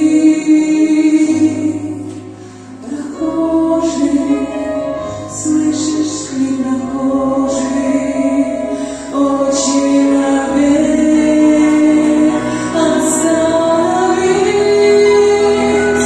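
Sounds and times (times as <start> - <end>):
choir singing a hymn: 9.2 - 16.0.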